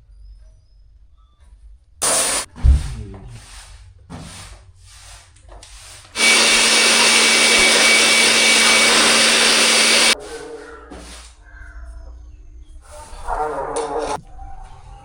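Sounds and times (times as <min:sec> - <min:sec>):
pressure washer spraying hiss: 0:02.0 - 0:02.5
motor hum: 0:06.2 - 0:10.2.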